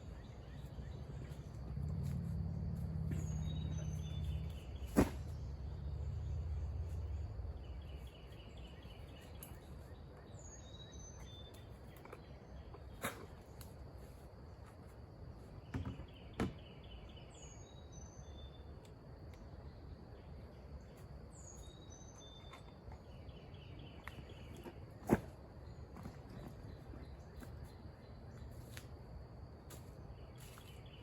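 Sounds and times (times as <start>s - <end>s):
low hum: 0.0s - 9.5s
steady insect drone: 0.0s - 31.0s.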